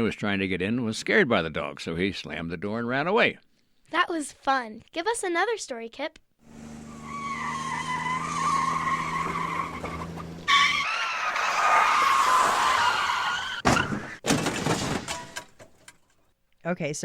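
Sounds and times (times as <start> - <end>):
car engine running: 6.4 - 10.5
tyres squealing: 6.6 - 14.3
car crash impacts: 12.3 - 15.9.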